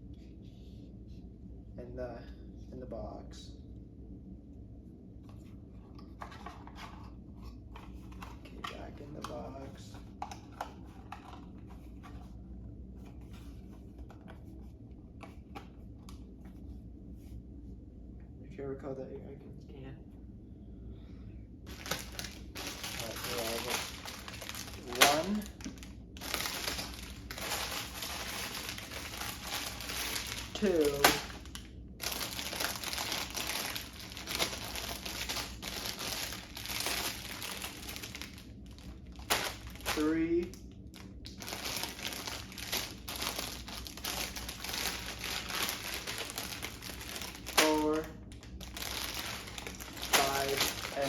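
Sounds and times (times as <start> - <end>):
low steady hum: 0.0 - 51.0
cardboard box and paper rustling: 21.7 - 38.4, 48.6 - 51.0
plastic bags crinkling: 21.7 - 40.2, 40.9 - 51.0.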